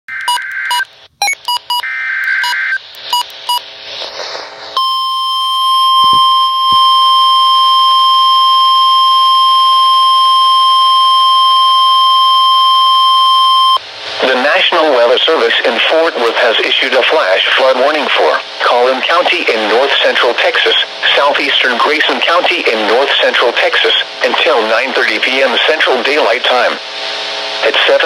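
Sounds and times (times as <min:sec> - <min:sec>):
high steady alarm tone: 0:00.1 - 0:03.6, 0:04.8 - 0:13.8
short electronic beeps: 0:00.1 - 0:03.6.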